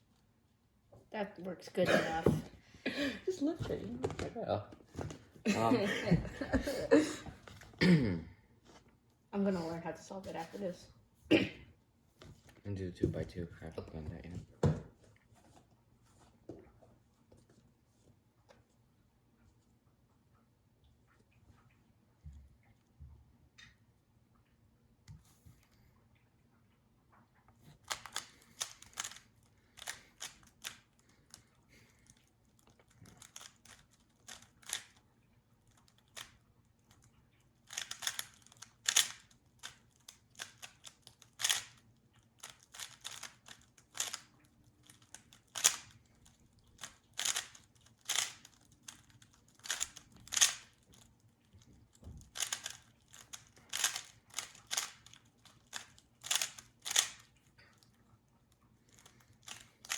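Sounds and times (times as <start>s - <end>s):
puzzle cube layers clicking: 27.8s - 29.2s, 33.1s - 35.0s, 37.7s - 41.8s, 42.4s - 46.0s, 46.7s - 50.8s, 52.2s - 57.2s.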